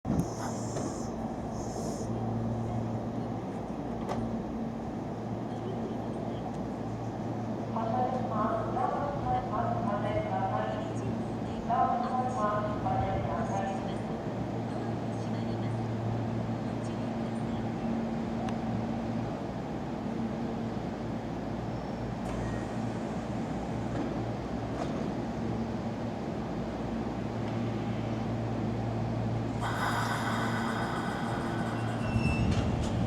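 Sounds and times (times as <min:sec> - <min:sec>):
electric train humming: 0:25.6 - 0:33.0
high steady tones: 0:29.6 - 0:32.7.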